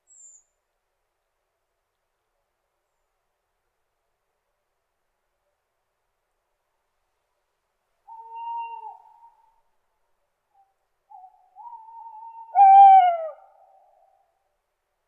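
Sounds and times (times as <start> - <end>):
owl hooting: 8.1 - 9.6, 11.1 - 14.0.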